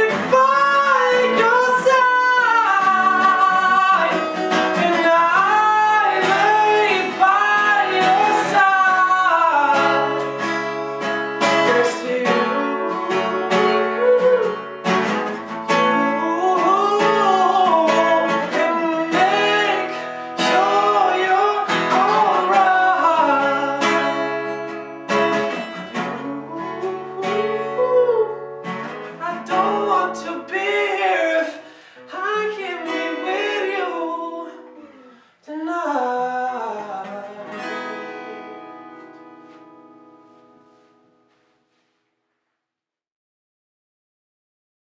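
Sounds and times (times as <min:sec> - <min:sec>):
person singing long bending notes: 0:00.0 - 0:10.1, 0:11.6 - 0:14.6, 0:15.8 - 0:24.0, 0:26.0 - 0:28.6, 0:29.2 - 0:37.6
acoustic guitar: 0:00.0 - 0:42.2.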